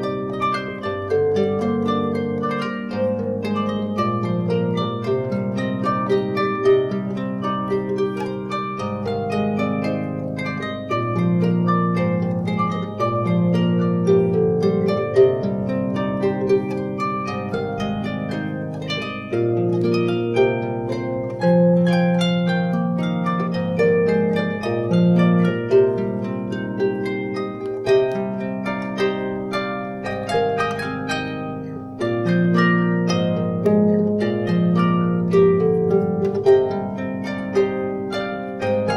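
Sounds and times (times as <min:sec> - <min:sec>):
harp plucked melody: 0:00.0 - 0:38.9.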